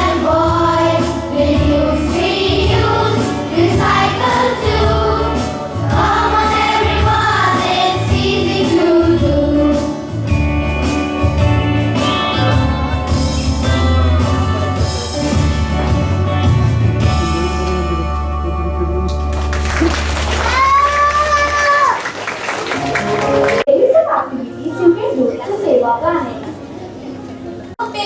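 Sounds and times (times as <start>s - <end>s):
group of voices singing: 0.0s - 10.1s
backing music with low beat: 10.2s - 19.4s.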